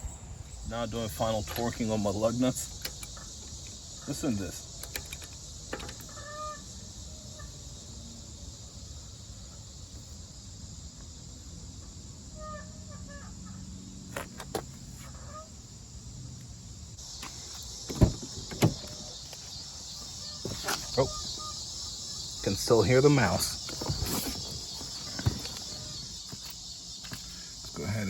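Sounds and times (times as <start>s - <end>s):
high insect hiss: 0.0s - 28.0s
short bird calls: 18.6s - 26.6s.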